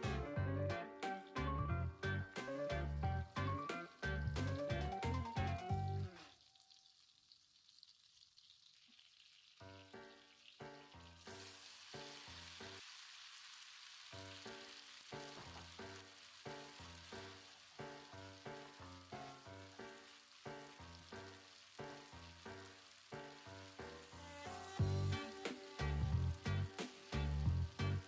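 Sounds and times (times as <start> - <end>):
soft music with steady beat: 0.0 - 6.2, 24.4 - 28.0
food sizzling in a frying pan: 1.1 - 28.0.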